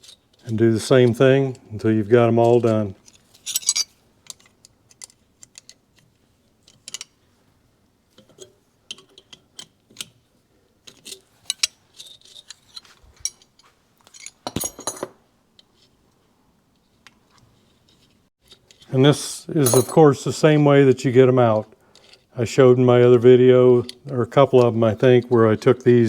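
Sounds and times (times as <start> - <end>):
metal nuts and wrenches clinking: 2.6 - 5.1, 10.9 - 15.2, 19.6 - 20.1.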